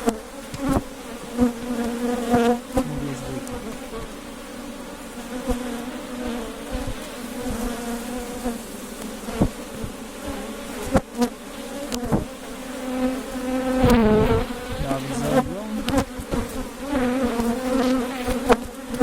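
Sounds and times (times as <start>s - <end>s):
bee buzzing close: 0.0s - 19.0s
honey bees buzzing: 0.0s - 19.0s
knocks of hive frames: 13.6s - 19.0s.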